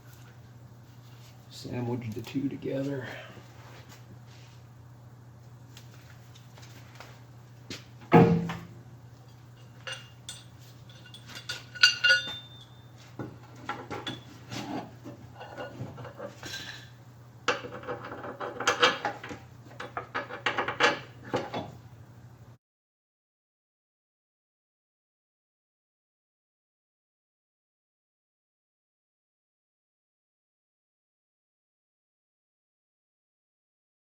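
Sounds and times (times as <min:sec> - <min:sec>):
faint steady hum: 0:00.0 - 0:22.6
metal pump parts clinking: 0:09.3 - 0:16.8, 0:17.5 - 0:21.7.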